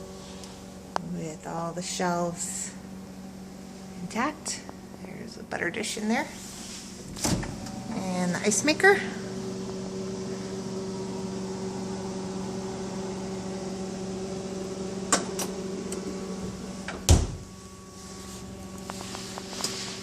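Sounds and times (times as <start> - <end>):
refrigerator humming: 0.0 - 20.0
refrigerator door thump: 7.1 - 7.6, 16.9 - 17.5.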